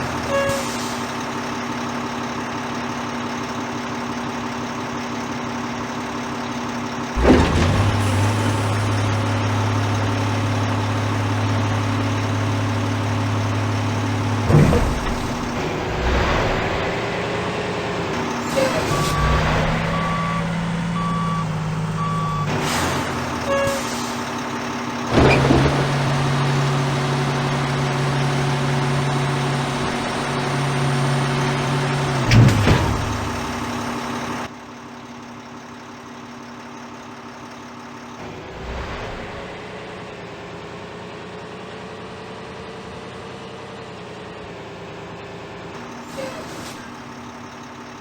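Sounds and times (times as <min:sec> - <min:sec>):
hauler engine running: 0:00.0 - 0:48.0
reversing alarm beeping: 0:18.5 - 0:23.9.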